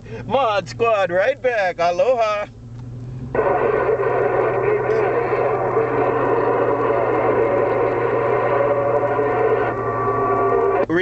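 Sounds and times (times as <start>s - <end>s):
constant low hum: 0.0s - 11.0s
garbled radio voices: 3.3s - 11.0s
radio static: 3.3s - 11.0s.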